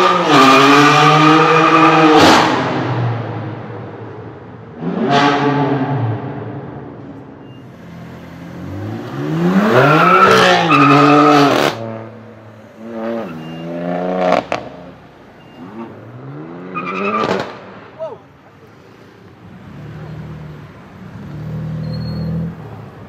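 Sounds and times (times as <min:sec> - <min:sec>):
car engine revving loudly: 0:08.5 - 0:12.1.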